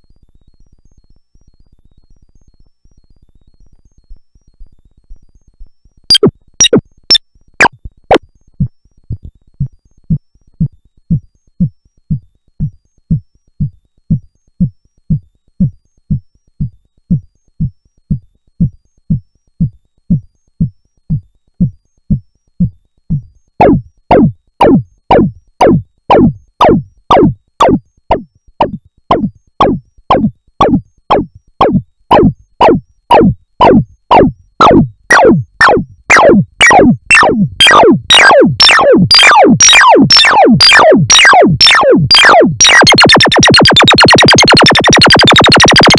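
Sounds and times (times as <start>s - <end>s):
synthesizer zapping notes: 6.1s - 6.8s, 23.6s - 45.9s.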